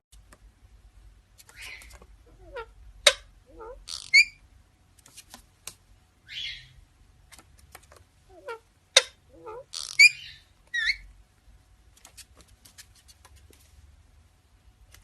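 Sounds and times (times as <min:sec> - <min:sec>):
parrot warbling and squawking: 0:01.5 - 0:04.4, 0:06.2 - 0:06.8, 0:08.3 - 0:11.1.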